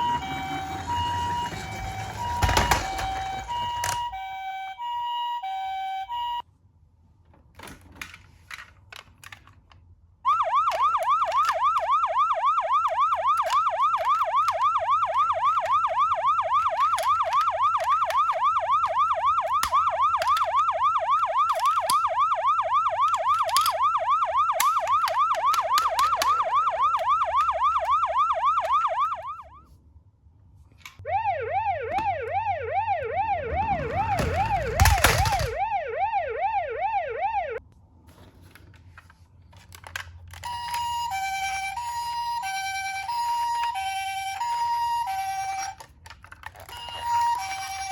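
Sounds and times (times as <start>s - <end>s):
toy ambulance siren: 0.0s - 6.4s, 10.2s - 29.7s, 31.0s - 37.6s, 39.8s - 47.9s
clicks: 31.8s - 35.7s.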